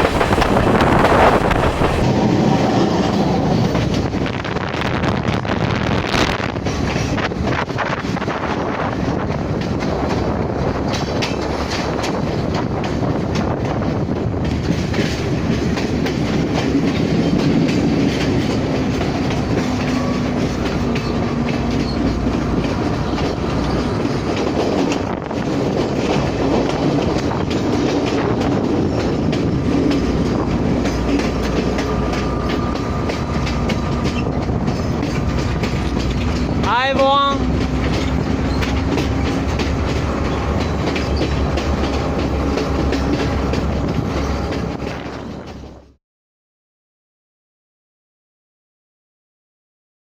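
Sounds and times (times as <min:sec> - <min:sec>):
vehicle engine rumble: 0:00.0 - 0:02.1, 0:37.4 - 0:45.9.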